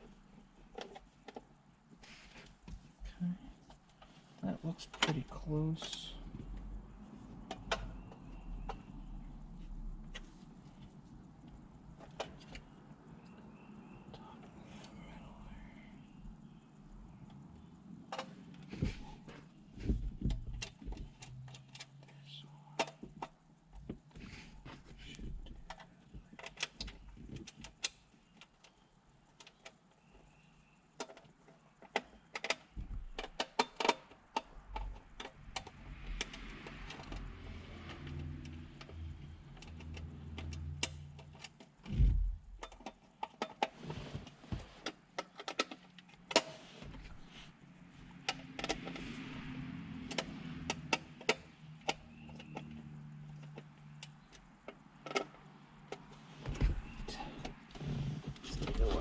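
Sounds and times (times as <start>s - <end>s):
rustling and scraping: 0.0s - 5.1s, 18.0s - 22.2s, 41.2s - 49.5s, 55.0s - 59.0s
heavy thump: 41.9s - 42.4s
plastic trim clicks and rattles: 44.8s - 46.5s.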